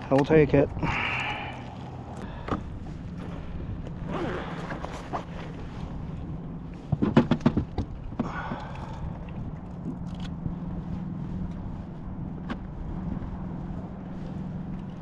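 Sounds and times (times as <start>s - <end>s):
steady low hum: 0.0s - 15.0s
knocks and thumps on a kayak: 6.9s - 8.4s.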